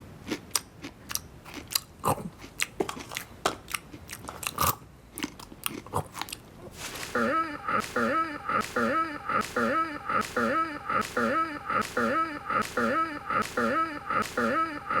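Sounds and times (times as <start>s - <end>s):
sharp crunching clicks: 7.7s - 15.0s.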